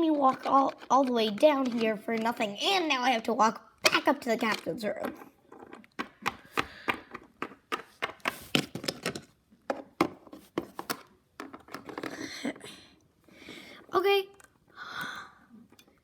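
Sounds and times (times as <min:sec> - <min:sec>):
plastic toy tapping on hard surface: 0:05.9 - 0:12.0.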